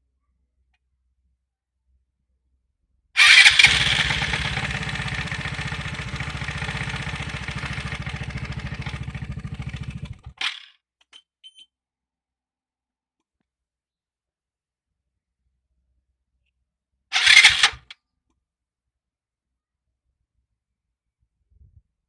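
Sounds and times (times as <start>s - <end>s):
scooter starter cranking: 3.2s - 10.6s, 17.2s - 17.9s.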